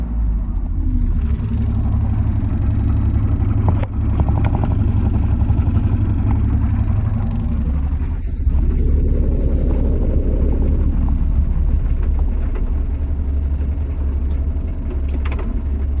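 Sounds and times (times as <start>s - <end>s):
diesel engine rumbling: 0.0s - 16.0s
rattle of metallic ticks: 10.0s - 16.0s.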